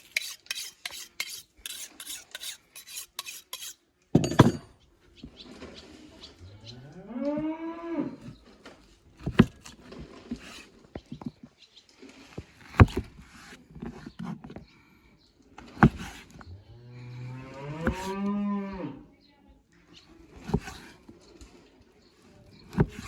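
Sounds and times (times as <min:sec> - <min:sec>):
cow mooing: 0:06.5 - 0:08.3, 0:16.7 - 0:19.0.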